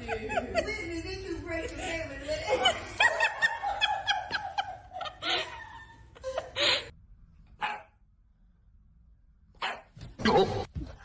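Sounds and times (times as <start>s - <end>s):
dog barking: 7.6s - 8.0s, 9.6s - 10.0s.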